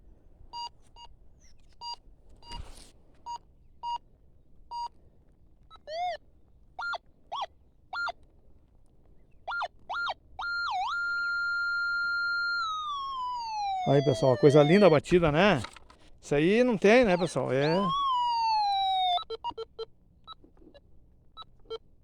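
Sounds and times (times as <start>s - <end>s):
metal detector beeps and tone: 6.8s - 8.2s, 9.5s - 12.8s, 13.7s - 15.7s, 16.3s - 19.7s.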